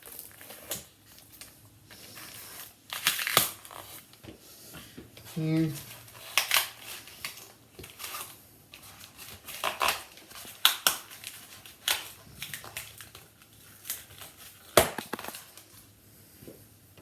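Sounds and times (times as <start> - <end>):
packaging crinkling and rustling: 0.0 - 4.2, 5.8 - 15.9
sharp knock: 14.8 - 15.4.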